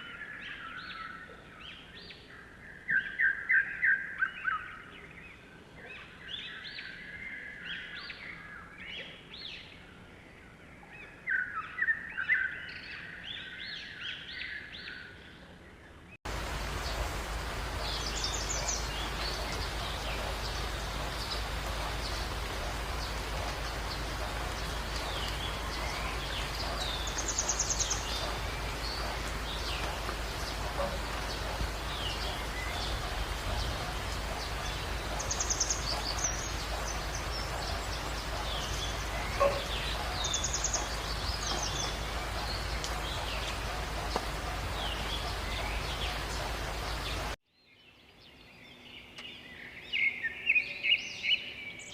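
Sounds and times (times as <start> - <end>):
birds chirping: 10.8 - 51.9
outdoor hiss: 16.3 - 47.4.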